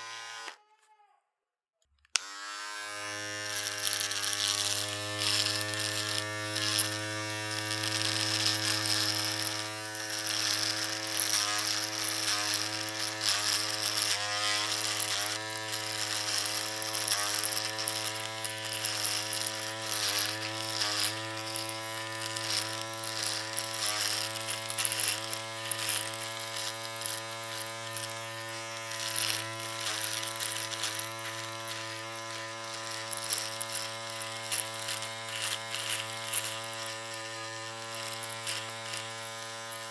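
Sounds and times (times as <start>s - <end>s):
electric shaver buzzing: 0.0s - 0.7s, 2.1s - 39.9s.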